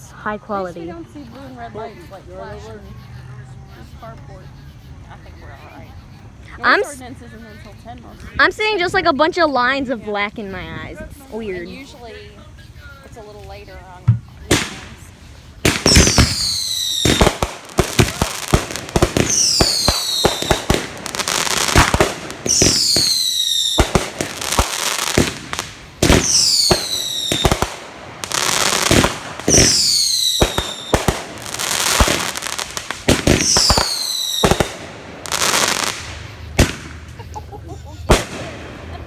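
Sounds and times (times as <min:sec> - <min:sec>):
firework whistles: 0:14.4 - 0:37.3
firework crackling and pops: 0:14.4 - 0:37.4, 0:38.0 - 0:39.0.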